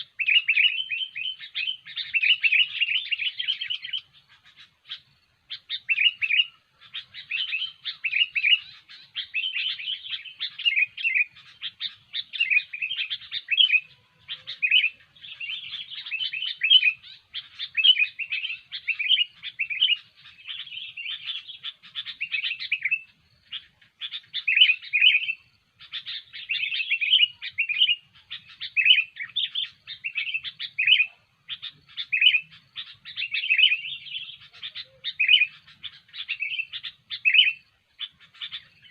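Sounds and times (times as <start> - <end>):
bird chirping song: 0.0 - 38.9.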